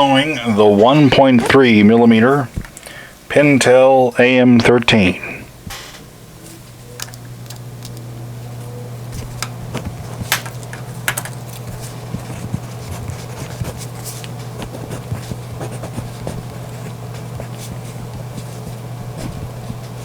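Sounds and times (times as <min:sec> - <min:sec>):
steady low hum: 0:00.0 - 0:20.0
pencil scratching on paper: 0:11.7 - 0:20.0.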